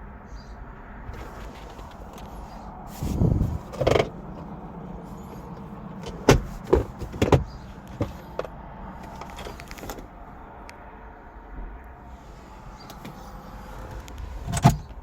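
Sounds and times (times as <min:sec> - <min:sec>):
heavy thumps on car: 0:06.0 - 0:08.5.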